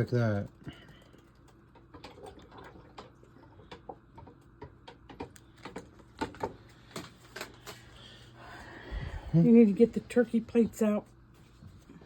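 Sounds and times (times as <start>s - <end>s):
food packages clicking and tapping: 0.0s - 8.2s.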